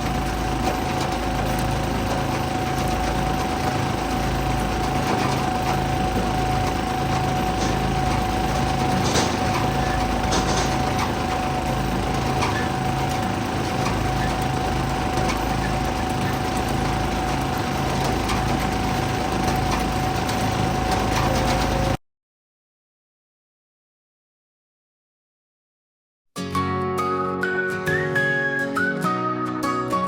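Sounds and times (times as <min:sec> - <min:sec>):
high whine: 0:00.0 - 0:22.0
small gasoline engine running: 0:00.0 - 0:22.0.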